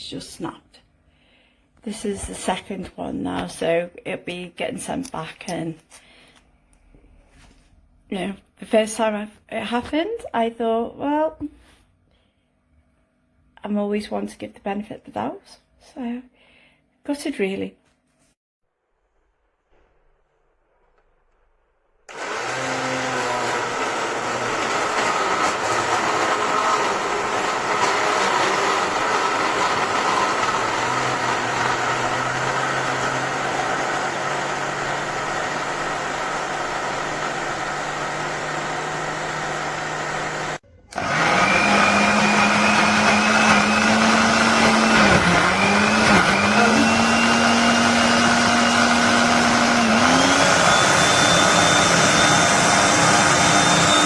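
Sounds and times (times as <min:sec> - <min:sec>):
blender motor running: 0:22.1 - 0:54.0.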